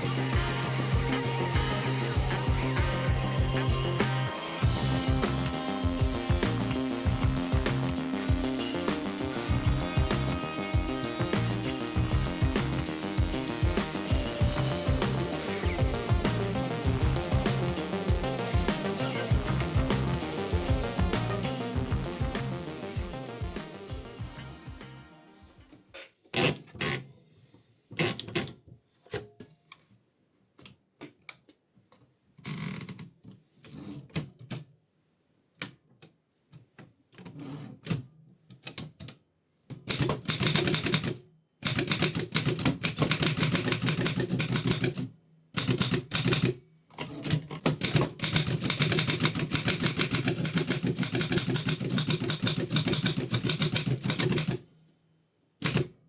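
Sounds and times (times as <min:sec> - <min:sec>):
manual typewriter typing: 0:39.9 - 0:45.0, 0:45.6 - 0:54.6.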